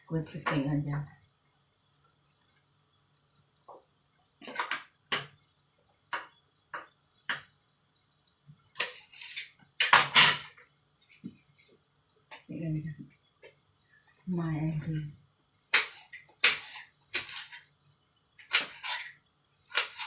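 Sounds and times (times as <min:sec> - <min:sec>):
utensils clinking against cookware: 0:18.4 - 0:20.0.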